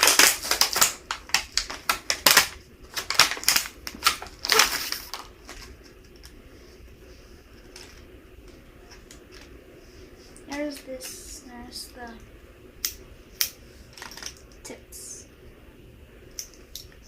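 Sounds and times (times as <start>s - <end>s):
plastic packaging crinkle: 0.0s - 6.4s, 13.9s - 14.4s.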